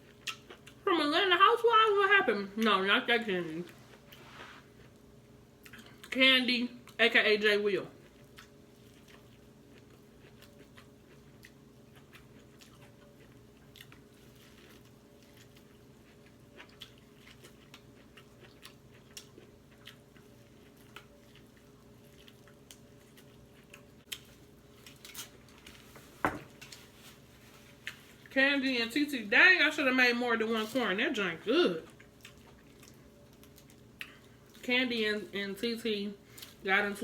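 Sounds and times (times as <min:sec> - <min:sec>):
person chewing and biting: 0:00.0 - 0:00.8, 0:08.1 - 0:25.8, 0:31.9 - 0:34.6
faint steady hum: 0:00.0 - 0:37.0.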